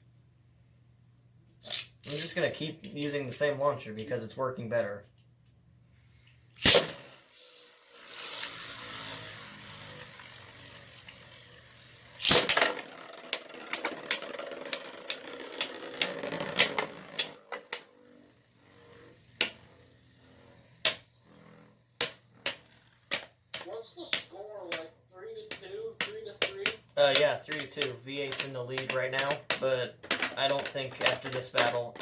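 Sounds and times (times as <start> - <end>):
spinning tops clacking: 1.5 - 3.4, 6.6 - 32.0
spinning tops whirring and scraping: 1.5 - 4.3, 6.0 - 32.0
spinning top launch: 1.6 - 3.3, 6.6 - 32.0
loud clash: 6.6 - 7.1.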